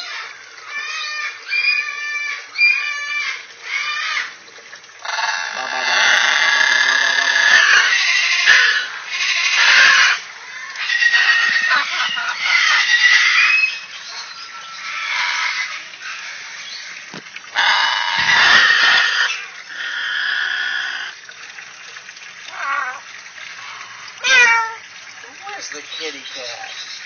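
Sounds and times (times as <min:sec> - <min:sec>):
parrot calling: 0:05.0 - 0:15.8, 0:17.6 - 0:21.1, 0:22.5 - 0:24.8
parrot imitating a meow: 0:22.5 - 0:23.1, 0:24.2 - 0:24.8.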